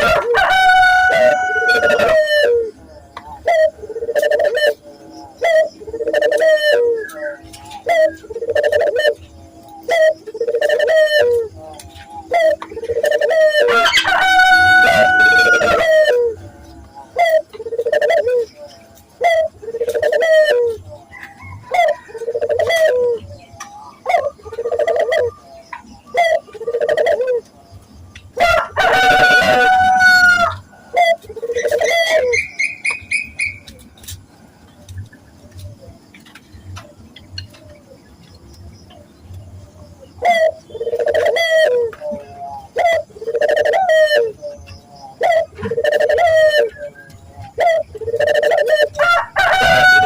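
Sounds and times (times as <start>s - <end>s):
rooster crowing: 0.0s - 2.8s, 13.5s - 16.6s, 21.0s - 23.3s, 28.4s - 31.0s, 48.8s - 50.0s
doves cooing: 0.0s - 50.0s.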